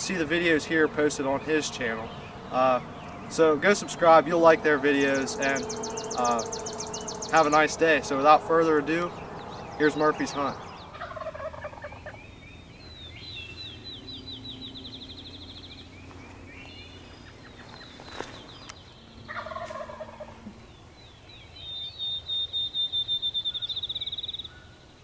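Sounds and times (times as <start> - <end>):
songbird high trill: 0.1 - 24.8
turkey gobbling: 9.8 - 12.2, 19.3 - 20.5.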